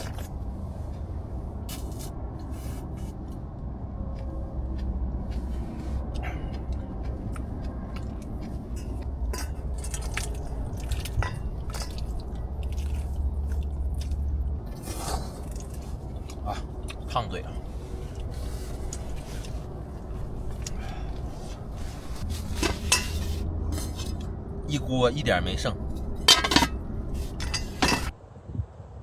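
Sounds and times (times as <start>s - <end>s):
wind rumble on microphone: 0.0s - 24.6s, 25.8s - 29.0s
person chewing and slurping: 4.0s - 24.3s.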